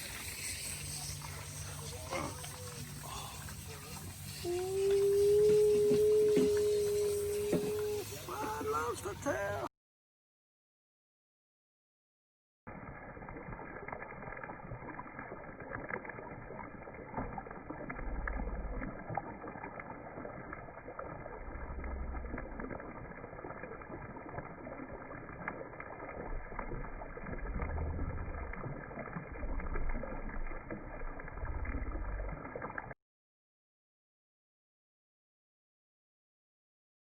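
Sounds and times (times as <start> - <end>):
hot oil sizzling: 0.0 - 8.6.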